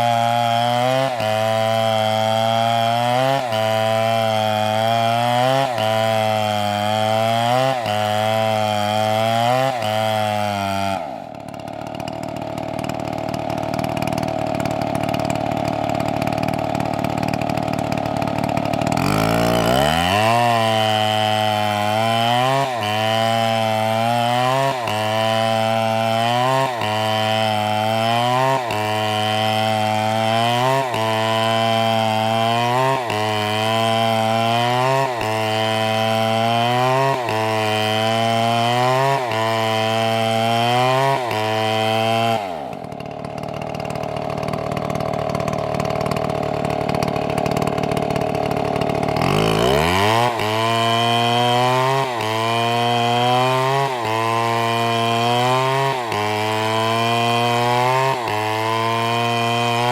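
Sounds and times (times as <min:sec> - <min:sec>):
chainsaw engine running: 0:00.0 - 0:59.9.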